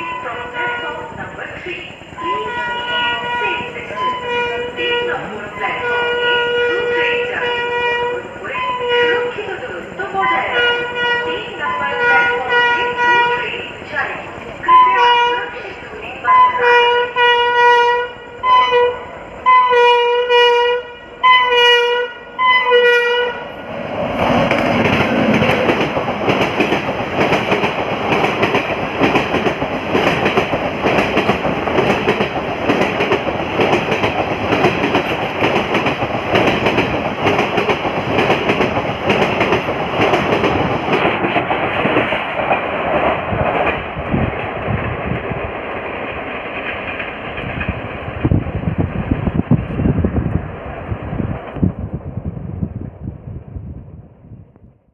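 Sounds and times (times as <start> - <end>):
locomotive horn blasts: 0.0 - 1.2, 2.2 - 9.5, 10.3 - 13.6, 14.6 - 15.6, 16.2 - 23.6
train rushing past: 0.0 - 54.4
rail clatter: 23.0 - 50.5.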